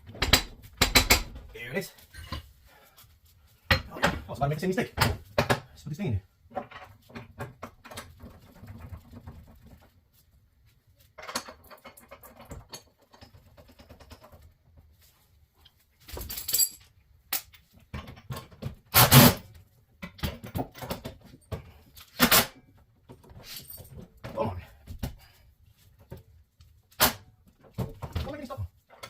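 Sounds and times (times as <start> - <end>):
metal parts and tools clinking: 16.0 - 19.3.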